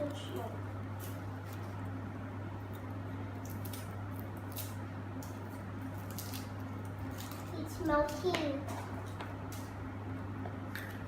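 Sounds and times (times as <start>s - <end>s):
foil wrapper crinkling: 3.4s - 8.3s.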